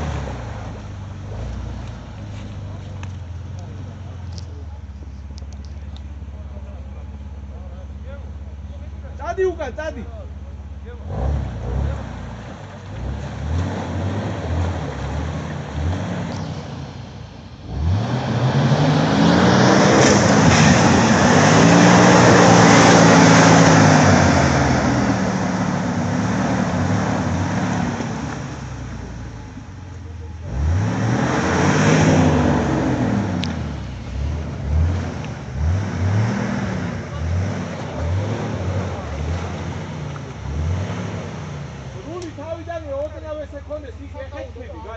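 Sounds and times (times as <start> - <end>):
engine revving hard: 11.0 - 29.2, 30.4 - 42.3.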